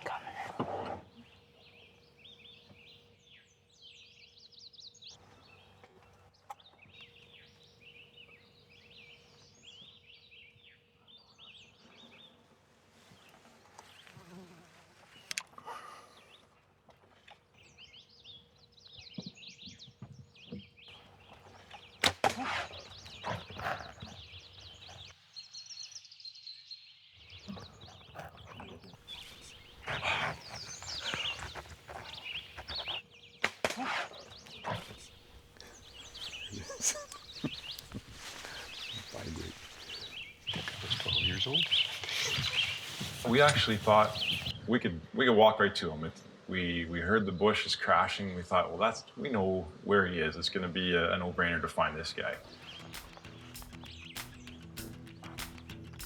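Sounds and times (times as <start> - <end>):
songbirds chirping: 0.0 - 56.0
sharp crack: 22.0 - 23.2, 29.1 - 42.1, 52.4 - 56.0
rustling: 27.5 - 44.5.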